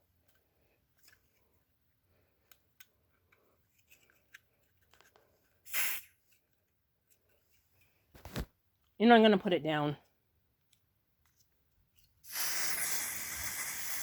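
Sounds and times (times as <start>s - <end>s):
aerosol can hiss: 5.6s - 6.2s, 12.2s - 14.0s.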